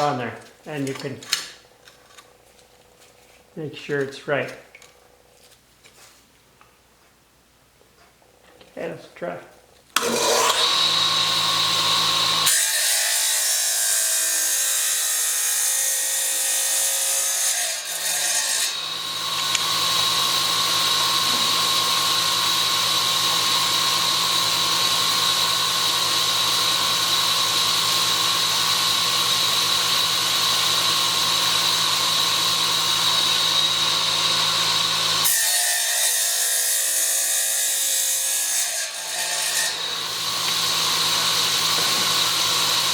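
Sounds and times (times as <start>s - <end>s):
wet tile saw whining: 10.0s - 42.9s.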